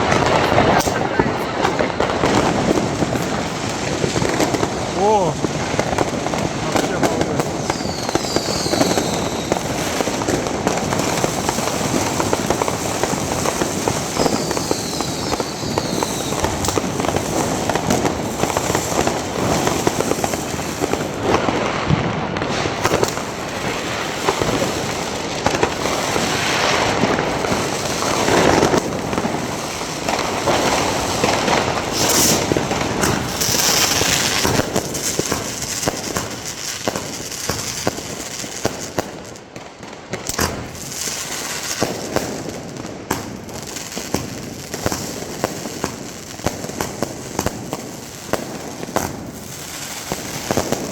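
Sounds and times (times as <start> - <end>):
firecrackers crackling: 0.0 - 50.9
firework bangs: 0.0 - 50.9
falling firework whistles: 7.5 - 10.2, 13.8 - 17.0, 30.5 - 38.0.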